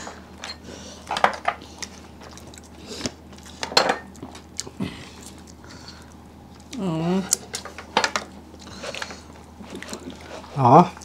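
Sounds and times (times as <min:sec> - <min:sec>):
chewing: 0:01.0 - 0:11.0
dishes and utensils clinking: 0:03.6 - 0:04.2.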